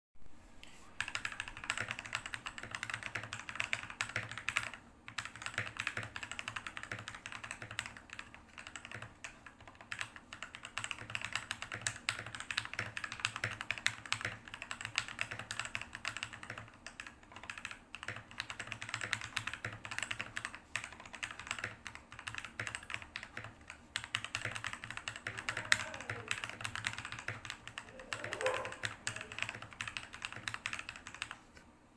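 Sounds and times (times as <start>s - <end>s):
fast typing on mechanical keyboard: 1.0s - 31.5s.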